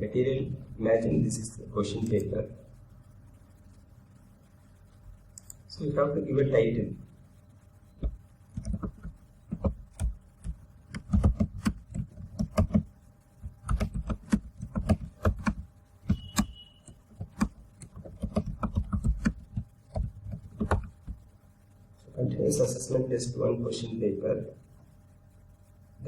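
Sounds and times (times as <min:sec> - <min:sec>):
keyboard typing: 0:05.3 - 0:05.7, 0:08.0 - 0:21.3
short high beep: 0:16.1 - 0:16.8.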